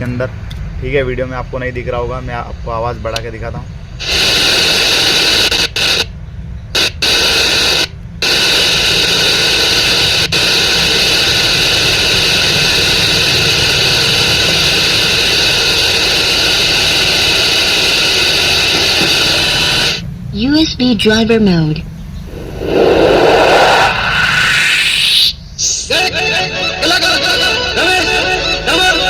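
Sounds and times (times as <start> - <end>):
radio static hiss: 4.0 - 6.1, 6.8 - 20.0, 22.3 - 26.2.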